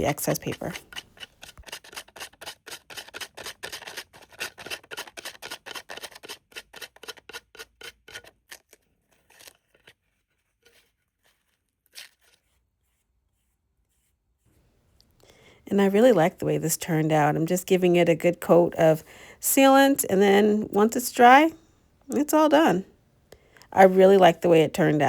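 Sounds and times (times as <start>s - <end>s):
emery board rasping: 0.9s - 8.3s.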